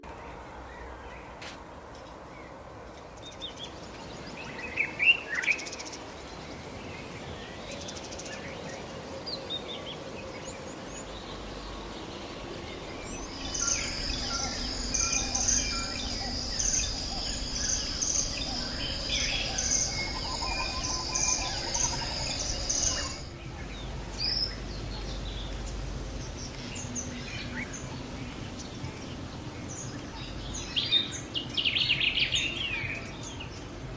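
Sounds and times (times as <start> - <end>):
birds chirping and calling: 3.2 - 33.8
high-pitched pulsing trill: 12.4 - 23.7.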